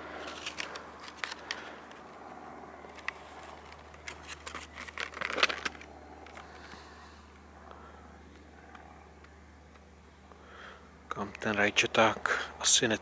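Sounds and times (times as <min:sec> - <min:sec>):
plastic blister pack crinkling: 0:00.2 - 0:02.1, 0:02.8 - 0:06.5.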